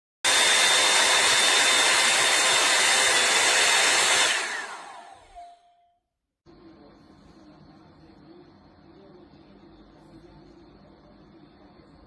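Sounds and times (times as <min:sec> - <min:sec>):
hot-air brush whining: 0:00.2 - 0:05.4.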